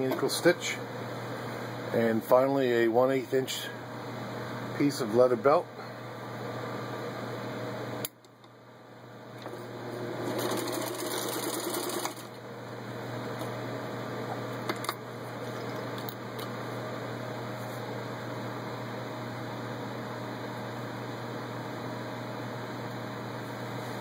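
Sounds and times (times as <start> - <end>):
sewing machine stitching leather: 10.2 - 12.3.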